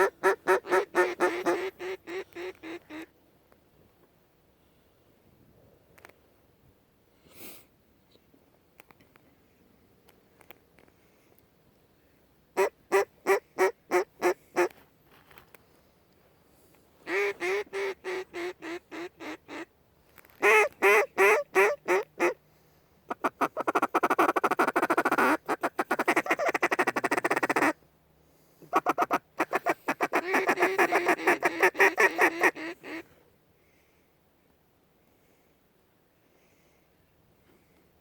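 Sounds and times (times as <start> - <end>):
duck quacking: 0.0 - 3.1, 12.6 - 14.7, 17.0 - 19.7, 20.4 - 22.4, 23.1 - 27.8, 28.7 - 33.1.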